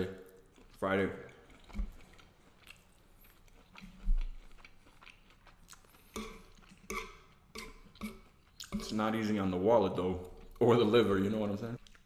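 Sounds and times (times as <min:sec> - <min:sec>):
man chewing with wet smacks: 0:00.1 - 0:09.0, 0:11.8 - 0:12.0.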